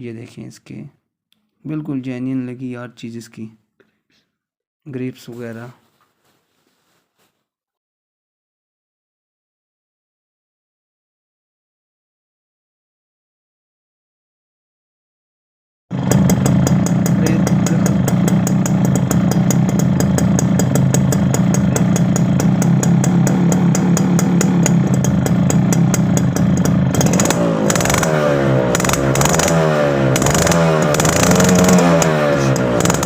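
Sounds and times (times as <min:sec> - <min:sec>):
motorcycle engine revving: 0:15.9 - 0:33.0.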